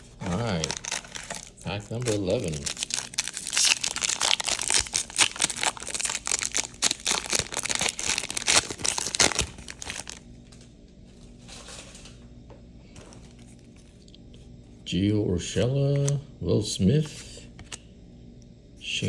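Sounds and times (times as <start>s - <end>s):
cards rustling: 0.2s - 10.2s
foil wrapper crinkling and tearing: 0.2s - 10.2s.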